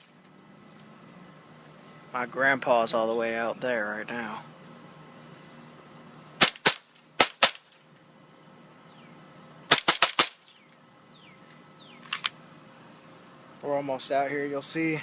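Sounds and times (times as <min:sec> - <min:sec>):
airsoft pistol shots: 0:06.4 - 0:07.8, 0:09.7 - 0:10.4.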